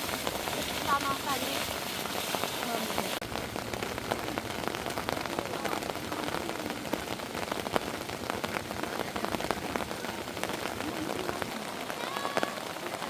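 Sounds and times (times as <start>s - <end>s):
heavy rain: 0.0s - 13.0s
raindrops ticking on surface: 0.0s - 13.0s.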